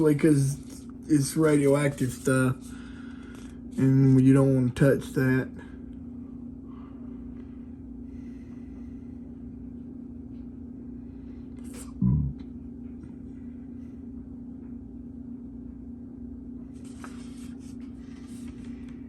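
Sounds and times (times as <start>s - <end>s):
steady low hum: 0.0s - 19.0s
paper rustling: 0.3s - 4.2s, 16.7s - 19.0s.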